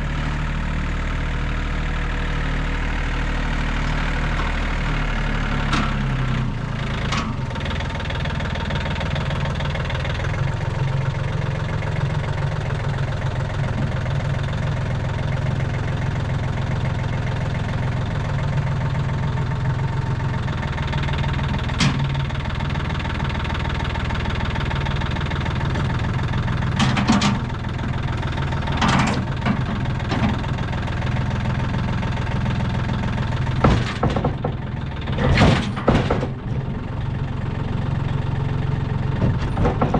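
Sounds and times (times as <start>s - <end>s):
skid steer engine idling: 0.0s - 39.9s
short knocks or clatters: 33.6s - 34.6s, 35.2s - 36.5s, 39.2s - 39.9s.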